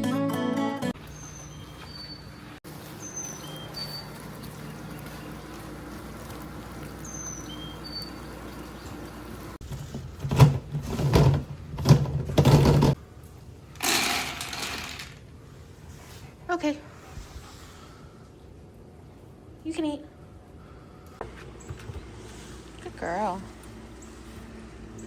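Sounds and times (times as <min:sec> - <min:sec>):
handling knocks and rustles: 0:09.6 - 0:13.0.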